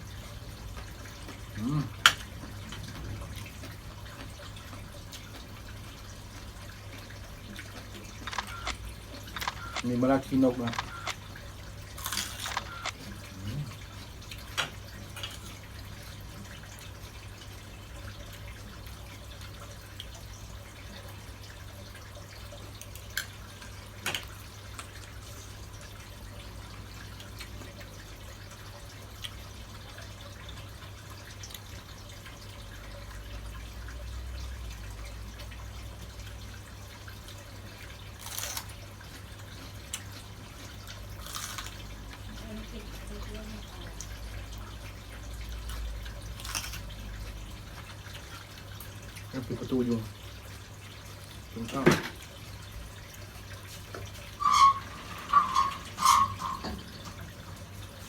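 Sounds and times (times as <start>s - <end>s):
sharp clicks: 8.2s - 9.9s, 10.7s - 11.2s.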